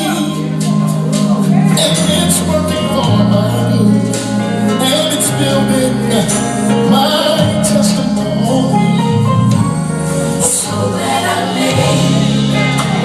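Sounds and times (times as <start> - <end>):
live gospel band: 0.0 - 13.0.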